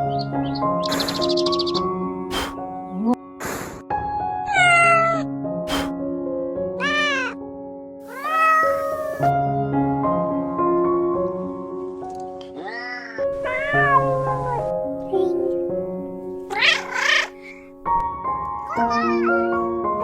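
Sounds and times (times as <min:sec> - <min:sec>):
background music with sustained notes: 0:00.0 - 0:20.0
cat meowing: 0:04.5 - 0:05.3, 0:06.8 - 0:07.4, 0:08.0 - 0:09.3, 0:12.6 - 0:14.7, 0:16.5 - 0:17.6, 0:18.7 - 0:20.0.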